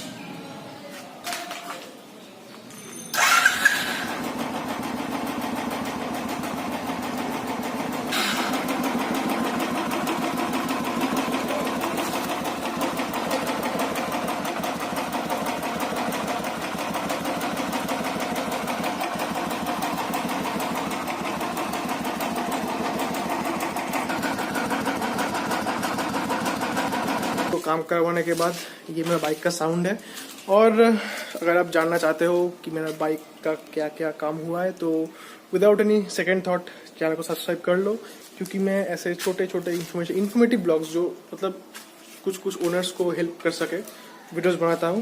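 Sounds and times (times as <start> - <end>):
motorcycle engine idling: 3.2 - 27.6.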